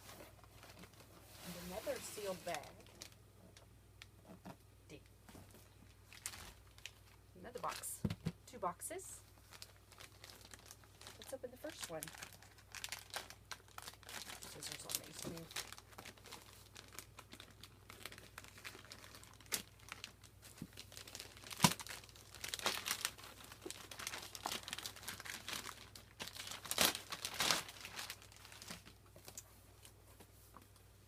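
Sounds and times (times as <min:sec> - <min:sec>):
plastic packaging crinkling: 0:05.6 - 0:07.9, 0:09.4 - 0:29.5.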